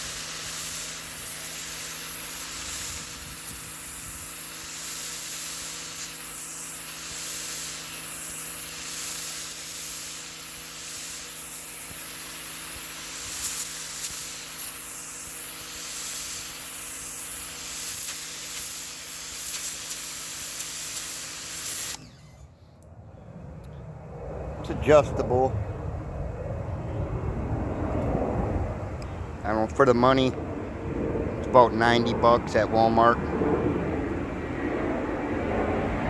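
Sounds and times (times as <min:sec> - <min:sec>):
water jet hissing: 0:00.0 - 0:22.4
pressure washer motor humming: 0:00.0 - 0:22.8.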